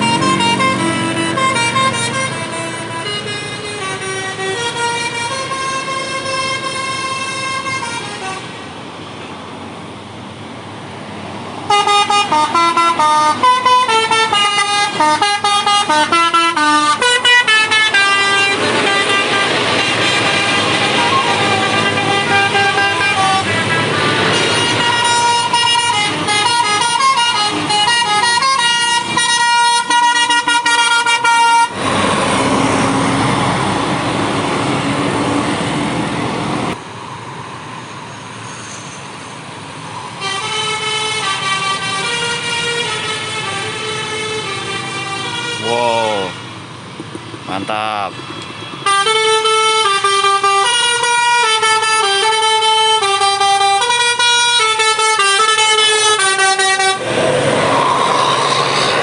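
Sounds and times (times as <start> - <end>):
bus multi-tone air horn tune: 0.0 - 8.6, 11.7 - 31.8, 40.2 - 46.5, 48.8 - 57.0
engine and road noise: 0.0 - 59.0.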